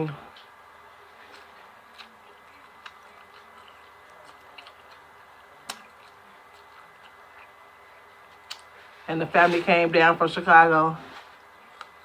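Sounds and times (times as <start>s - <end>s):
person chewing: 1.1s - 8.8s.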